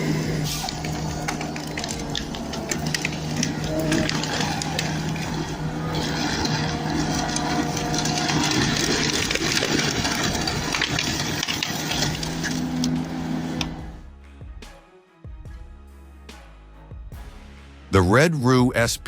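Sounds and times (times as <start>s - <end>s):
machine rattling and clicking: 0.0s - 13.8s
diesel engine running: 0.0s - 14.0s.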